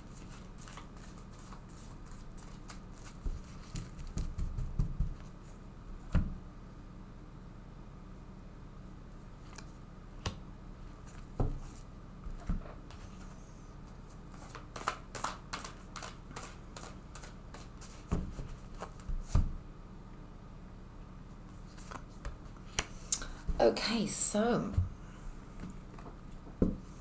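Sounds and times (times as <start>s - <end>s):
cards riffling: 14.4s - 17.9s
cards flicking and tapping: 14.4s - 19.5s.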